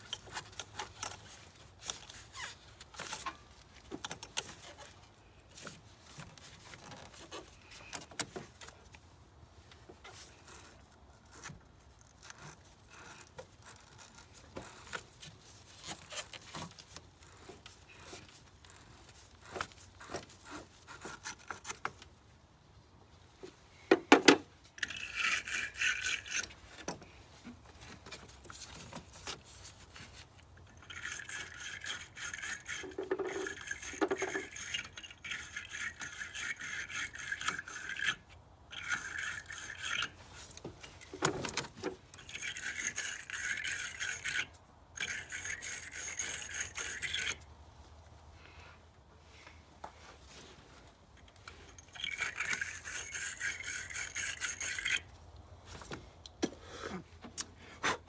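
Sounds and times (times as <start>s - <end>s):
wire brush scrubbing metal terminals: 24.8s - 26.6s, 30.6s - 41.2s, 42.0s - 47.4s, 51.2s - 55.1s.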